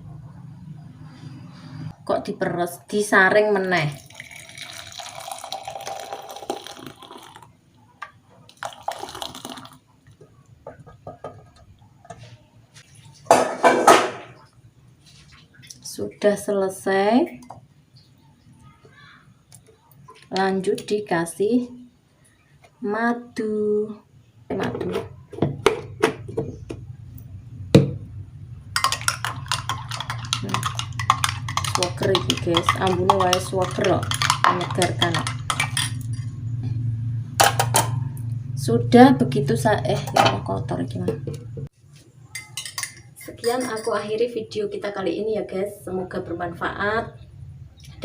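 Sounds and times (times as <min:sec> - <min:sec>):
liquid pouring into container: 0:03.9 - 0:07.6, 0:08.5 - 0:09.8
spoon stirring clinks in glass: 0:28.8 - 0:36.3, 0:42.4 - 0:44.0.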